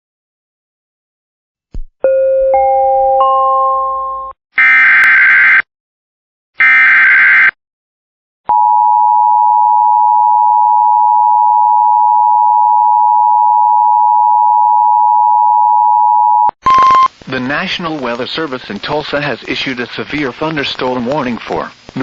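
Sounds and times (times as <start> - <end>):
two-tone attention signal: 15.8 - 17.1.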